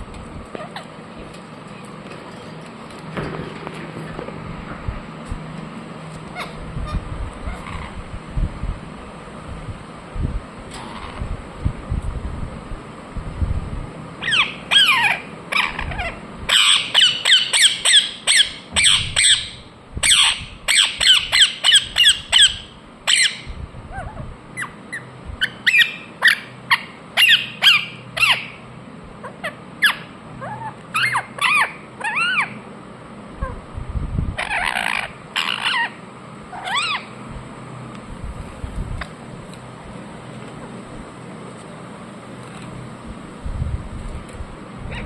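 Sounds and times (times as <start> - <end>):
parrot chirping: 6.3 - 8.1, 14.2 - 32.6, 34.4 - 37.2.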